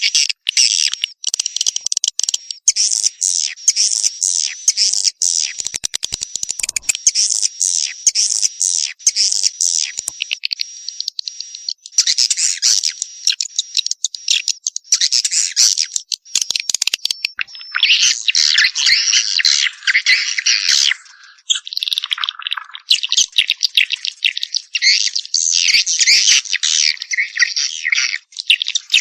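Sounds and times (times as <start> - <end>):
swiftlet chattering chirps: 5.4 - 7.4
thin steady high tone: 6.6 - 7.0
dry clicks: 10.0 - 10.3.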